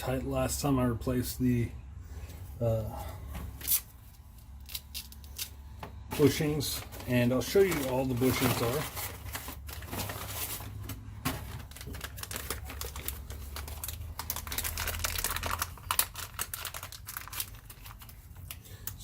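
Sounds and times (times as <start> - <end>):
plastic parts clicking and rustling: 6.1 - 19.0.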